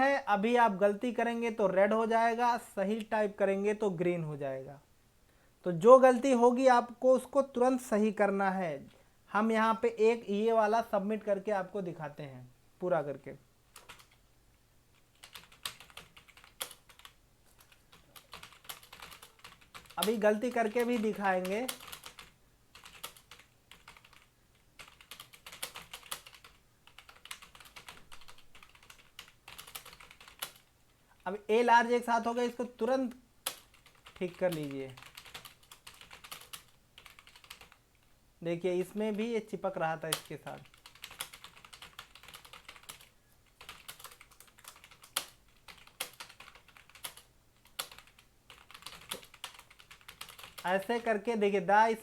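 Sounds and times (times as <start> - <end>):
fingers typing on keyboard: 13.8 - 14.2, 15.1 - 30.6, 33.4 - 37.8, 40.1 - 50.8.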